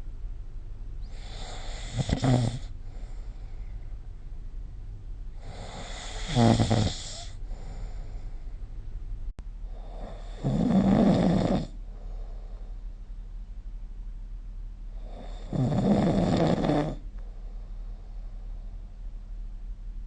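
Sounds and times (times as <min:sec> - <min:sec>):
person snoring: 0:01.0 - 0:03.3, 0:05.4 - 0:08.4, 0:09.7 - 0:12.3, 0:15.0 - 0:17.0.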